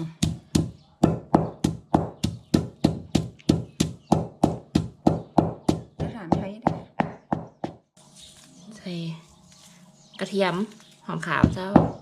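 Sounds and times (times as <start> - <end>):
knife chopping ingredients: 0.1 - 7.8.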